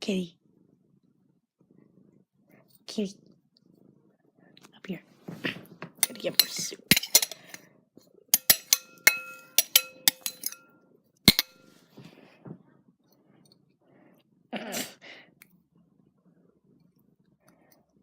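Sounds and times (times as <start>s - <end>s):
metal spoon clinking on bowl: 6.0s - 7.6s, 8.4s - 10.7s, 11.3s - 11.6s.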